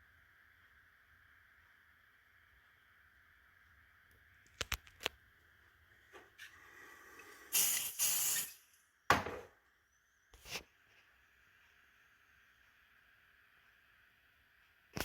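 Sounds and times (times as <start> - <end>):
hissing bursts of air: 6.6 - 8.7.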